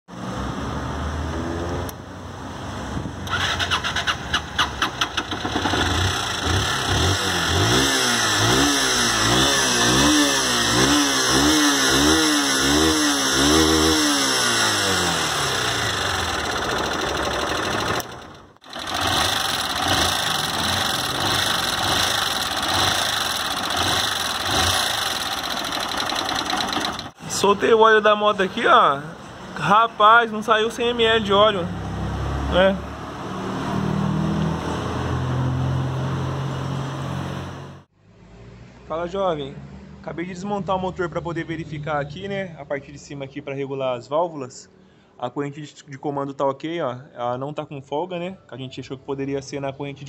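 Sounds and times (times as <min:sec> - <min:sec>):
motorcycle engine revving: 0:03.2 - 0:27.2.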